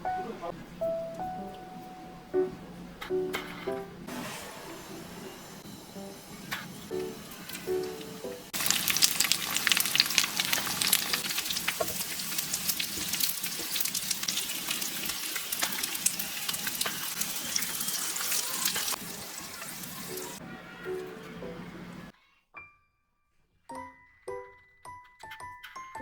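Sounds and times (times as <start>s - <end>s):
food sizzling in frying pan: 4.1s - 20.4s.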